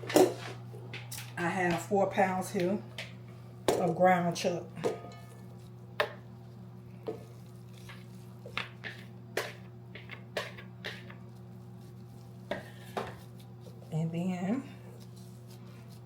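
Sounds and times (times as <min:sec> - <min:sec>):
steady low hum: 0:00.0 - 0:16.0
meat and packaging being handled: 0:05.3 - 0:16.0.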